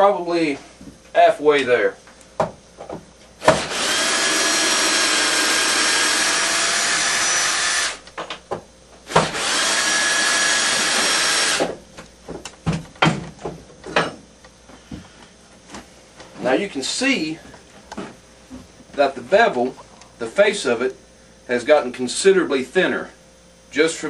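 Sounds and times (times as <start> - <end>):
power drill running: 3.4 - 8.0, 9.1 - 11.8.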